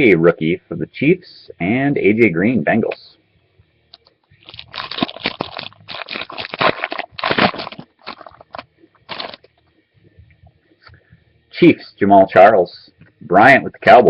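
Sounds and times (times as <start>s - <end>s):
foil wrapper tearing and crinkling: 4.4s - 9.5s.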